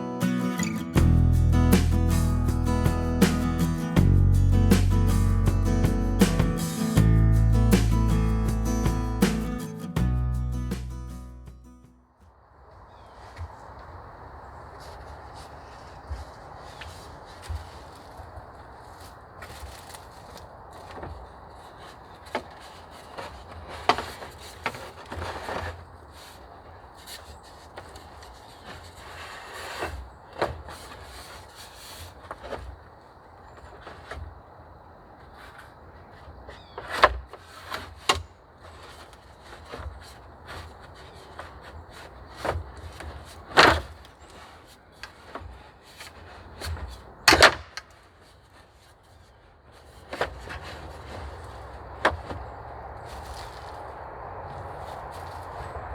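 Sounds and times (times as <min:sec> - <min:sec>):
branches rustling: 0:00.0 - 0:11.2, 0:12.3 - 0:55.9
wood scraping: 0:00.0 - 0:11.4, 0:14.7 - 0:55.9
wooden sticks knocking: 0:01.0 - 0:07.1
wood knocking and cracking: 0:36.8 - 0:48.0.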